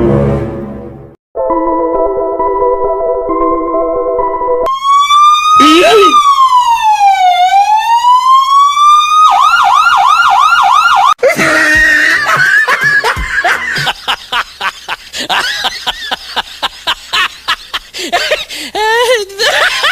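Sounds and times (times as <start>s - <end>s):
electronic police siren: 4.6s - 11.2s.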